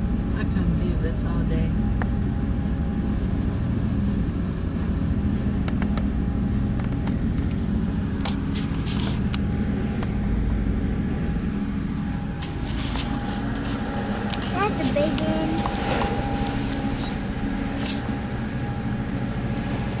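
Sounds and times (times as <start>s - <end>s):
boat engine drone: 0.0s - 20.0s.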